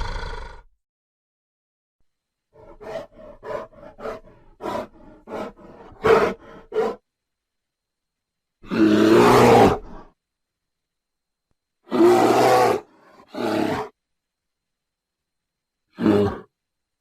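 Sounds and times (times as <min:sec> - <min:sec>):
bear roaring: 0:00.0 - 0:00.7, 0:02.6 - 0:07.0, 0:08.6 - 0:10.1, 0:11.9 - 0:14.0, 0:15.9 - 0:16.5.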